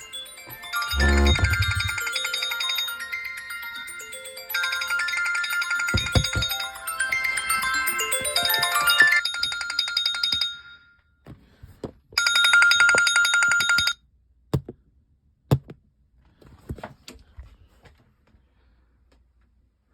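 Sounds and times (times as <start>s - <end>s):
chiming tone: 0.0s - 10.8s
trilling alarm bell ring: 0.0s - 10.9s, 12.2s - 14.0s.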